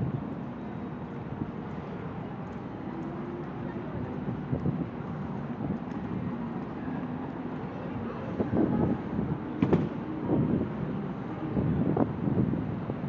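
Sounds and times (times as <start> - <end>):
road traffic rumble: 0.0 - 13.0
wind buffeting microphone: 3.7 - 6.8, 7.6 - 13.0.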